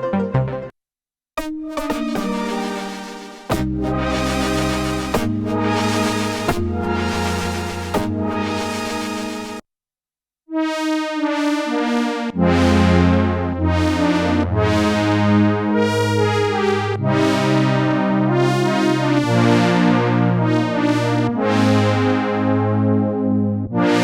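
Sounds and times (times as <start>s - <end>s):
synthesizer bass notes: 1.4s - 9.6s, 12.4s - 15.6s
synthesizer chords: 1.4s - 9.6s, 11.2s - 17.8s.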